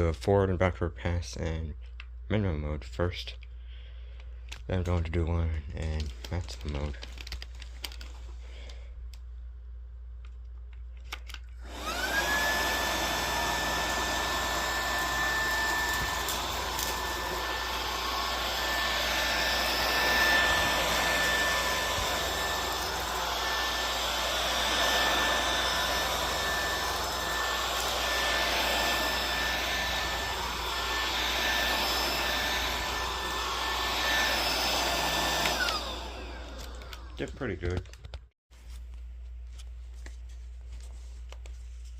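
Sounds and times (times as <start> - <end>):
stick vacuum motor whining: 11.6 - 37.9.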